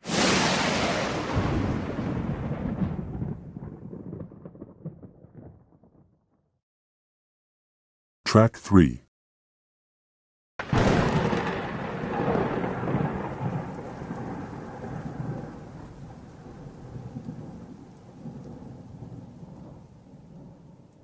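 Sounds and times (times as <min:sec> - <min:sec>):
thunder rumbling: 0:00.1 - 0:06.0, 0:10.6 - 0:19.5.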